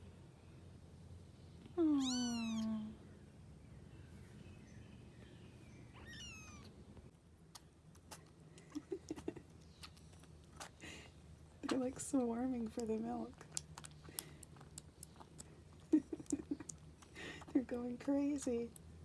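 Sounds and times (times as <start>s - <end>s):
kittens meowing: 1.9s - 2.9s, 6.0s - 6.7s.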